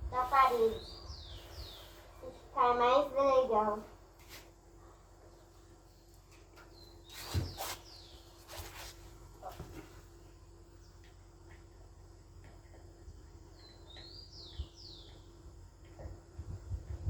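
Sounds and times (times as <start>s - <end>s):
faint steady hum: 0.0s - 17.0s
bird chirping: 0.4s - 2.4s, 6.7s - 8.4s, 13.5s - 15.4s.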